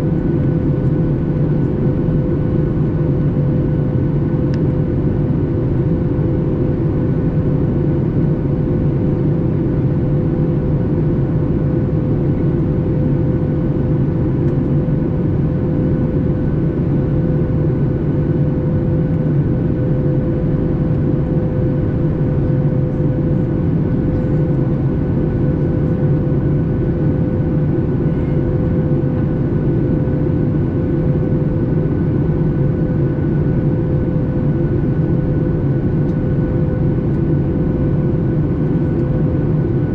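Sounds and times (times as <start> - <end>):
airplane cabin drone: 0.0 - 39.9
constant engine whine: 0.0 - 39.9.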